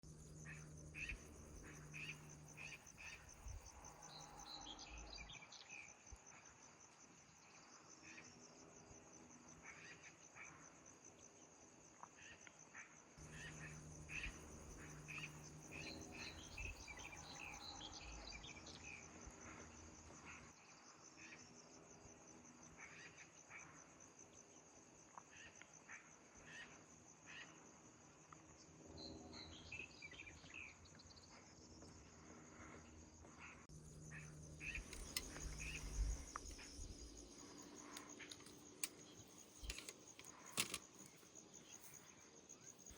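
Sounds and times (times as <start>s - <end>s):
crickets trilling: 0.0s - 9.6s, 13.2s - 22.6s, 33.7s - 42.9s.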